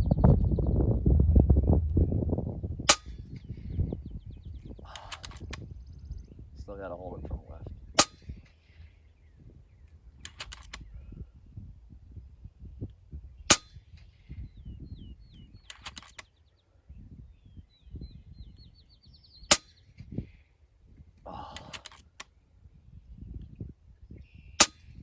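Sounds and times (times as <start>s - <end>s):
bird chirping: 0.0s - 2.2s, 3.2s - 11.2s, 13.2s - 20.7s, 22.9s - 24.6s
wind on microphone: 0.0s - 21.8s, 22.4s - 25.0s
air rifle shots: 2.9s - 3.6s, 4.9s - 5.6s, 8.0s - 8.8s, 13.5s - 14.2s, 19.5s - 19.8s
rifle action clicks: 4.9s - 5.6s, 10.2s - 10.9s, 15.6s - 16.3s, 21.5s - 22.3s.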